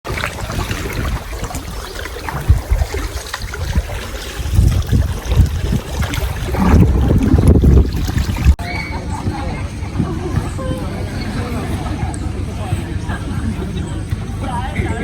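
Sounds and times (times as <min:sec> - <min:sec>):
water splashing: 0:00.0 - 0:09.6
wind rumbling on microphone: 0:00.1 - 0:10.6.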